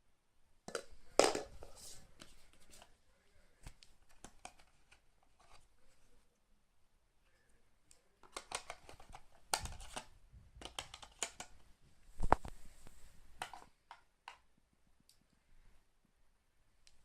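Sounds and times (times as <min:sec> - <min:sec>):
phone packaging handling: 0:08.2 - 0:11.5.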